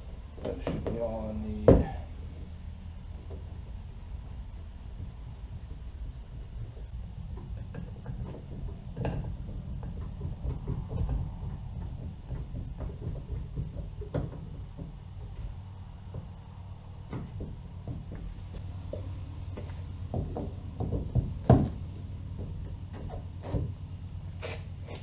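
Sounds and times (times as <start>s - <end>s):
steady low rumble: 0.0s - 25.0s
tools knocking on plastic hull: 7.4s - 15.3s, 20.1s - 21.8s.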